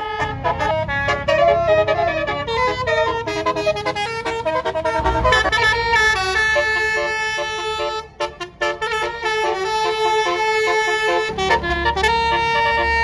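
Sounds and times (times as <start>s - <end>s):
musical bus horn tune: 0.0s - 13.0s
low rumble: 0.5s - 8.4s.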